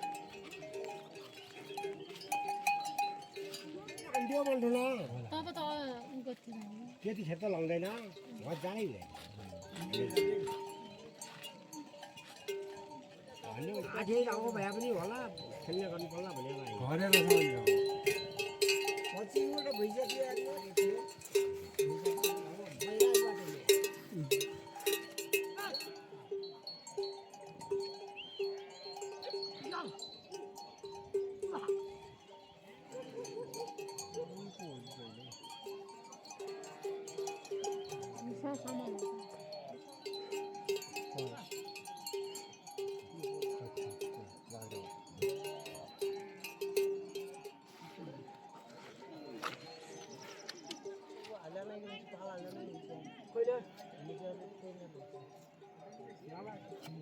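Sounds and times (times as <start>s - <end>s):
livestock bells clanking: 0.0s - 57.0s.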